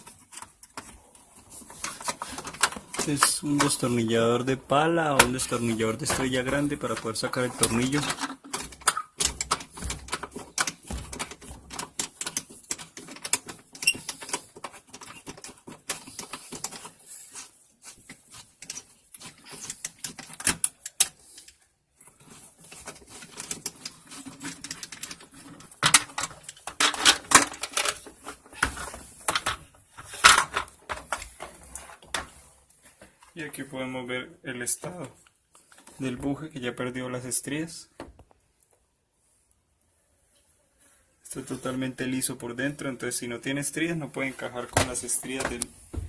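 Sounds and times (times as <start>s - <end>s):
screwdriver clicking and scraping: 5.2s - 29.5s.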